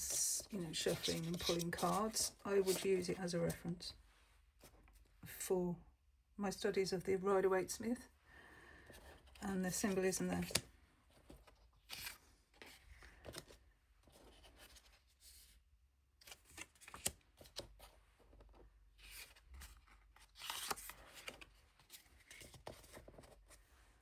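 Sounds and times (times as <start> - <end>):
cards sliding and rustling: 0.0 - 3.2, 10.4 - 15.6, 16.2 - 18.0, 19.0 - 23.6.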